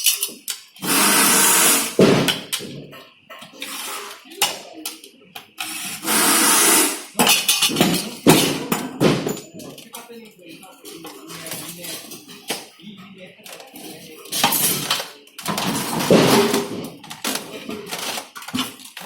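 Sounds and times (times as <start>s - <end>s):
metal parts clinking: 0.0s - 1.1s
air tool hissing bursts: 0.8s - 2.0s, 5.8s - 7.1s.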